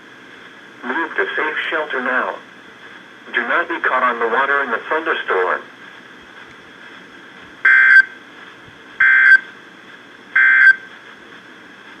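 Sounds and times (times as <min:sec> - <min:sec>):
faint radio hiss: 0:00.0 - 0:12.0
alert data tone bursts: 0:07.7 - 0:08.1, 0:09.0 - 0:09.4, 0:10.4 - 0:10.8.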